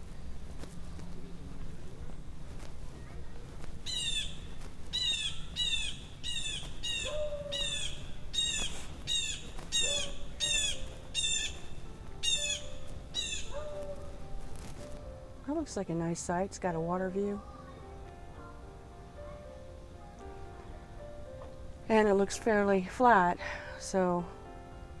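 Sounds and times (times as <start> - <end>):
bird calling: 3.8 - 15.0.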